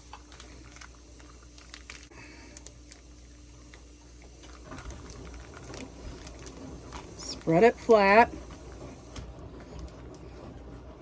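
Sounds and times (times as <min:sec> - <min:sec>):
plastic bag crinkling: 0:00.0 - 0:03.8, 0:04.4 - 0:08.9.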